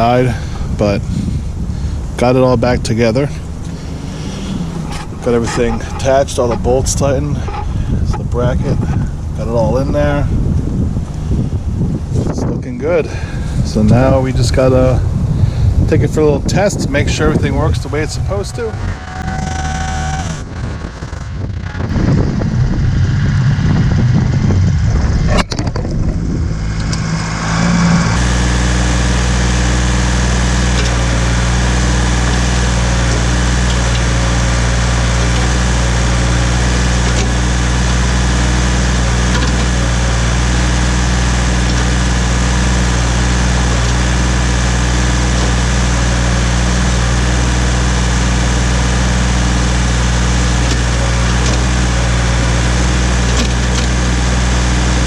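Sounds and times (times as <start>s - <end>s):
uneven noise: 0.0s - 10.0s, 24.8s - 55.0s
diesel engine idling: 0.0s - 12.1s, 12.7s - 25.0s, 26.0s - 55.0s.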